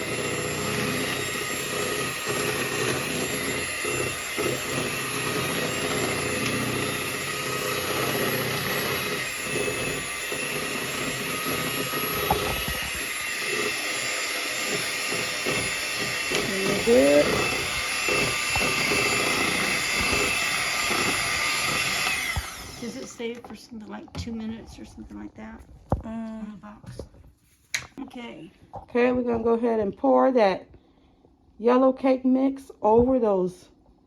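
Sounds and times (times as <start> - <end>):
electric mixer running: 0.0 - 23.5.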